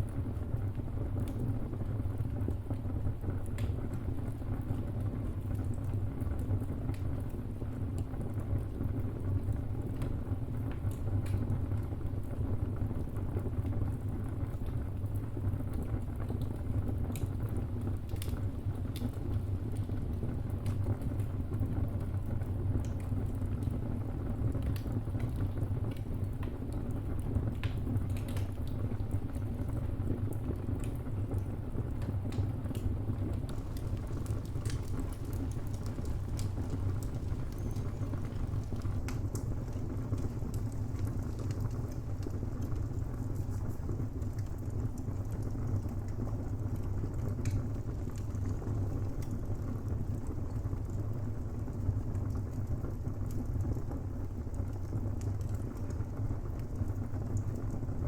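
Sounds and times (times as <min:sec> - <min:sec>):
wood fire rumbling: 0:00.0 - 0:58.0
burning wood crackling and popping: 0:30.3 - 0:51.2, 0:51.8 - 0:58.0.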